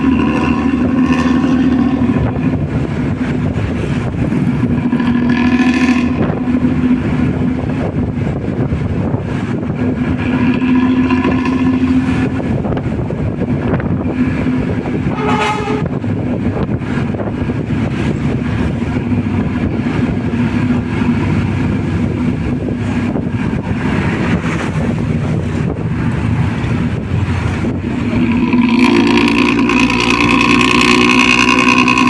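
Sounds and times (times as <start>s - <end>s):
bus horn: 0.0s - 3.0s, 4.3s - 8.1s, 10.1s - 17.2s, 28.1s - 32.0s
bus engine running: 0.0s - 32.0s.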